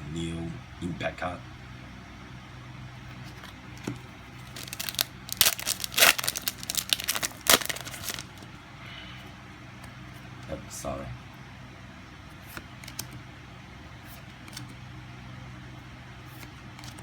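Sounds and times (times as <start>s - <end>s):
plastic wrapper crinkling and tearing: 4.4s - 8.5s.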